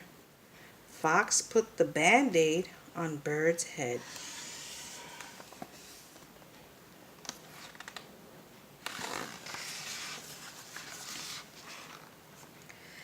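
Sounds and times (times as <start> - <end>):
paper rustle: 8.9 - 12.6.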